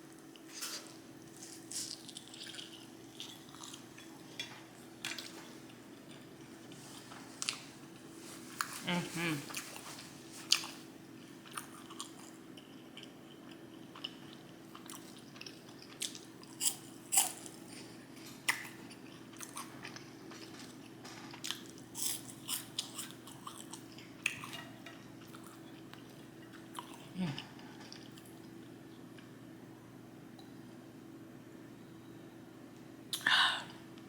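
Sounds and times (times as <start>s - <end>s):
chewing and biting food: 1.4s - 4.4s, 11.4s - 17.9s.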